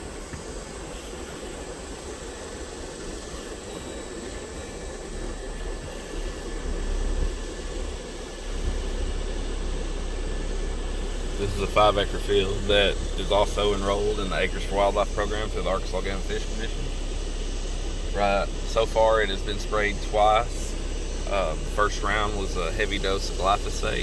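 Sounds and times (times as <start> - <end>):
road and wind noise: 0.0 - 24.0
vehicle driving rumble: 3.9 - 24.0.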